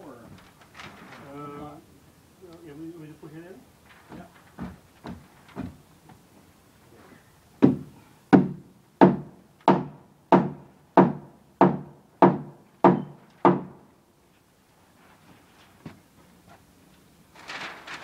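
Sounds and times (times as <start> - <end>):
hammer driving a nail into wood: 7.6 - 13.8.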